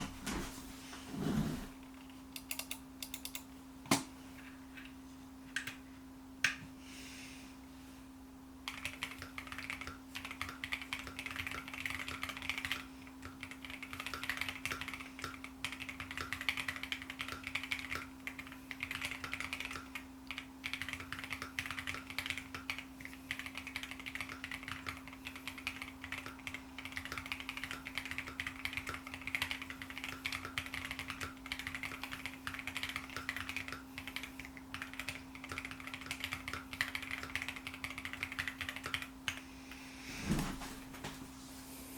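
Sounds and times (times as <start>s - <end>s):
mechanical keyboard typing: 2.4s - 3.4s, 8.7s - 39.1s.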